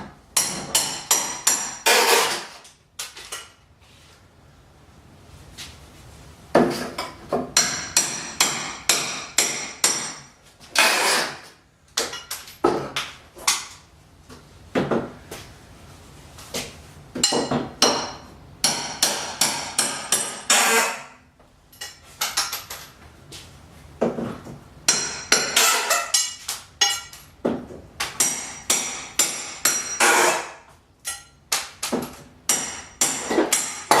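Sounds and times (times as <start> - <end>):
hammer driving nails: 0.4 - 2.6, 7.5 - 13.7, 17.2 - 21.1, 24.9 - 27.2, 28.0 - 34.0
scraping sounds: 1.9 - 2.6, 10.4 - 11.6.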